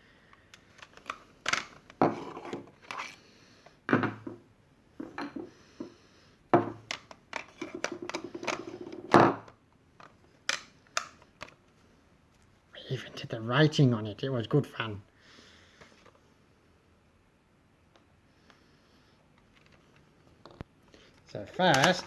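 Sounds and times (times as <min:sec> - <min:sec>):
hard plastic clicks and scrapes: 0:00.5 - 0:03.2, 0:06.9 - 0:09.1, 0:19.4 - 0:22.0.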